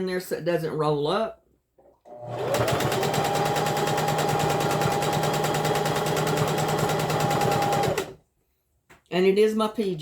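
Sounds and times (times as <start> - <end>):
electric sewing machine running: 2.1 - 8.2.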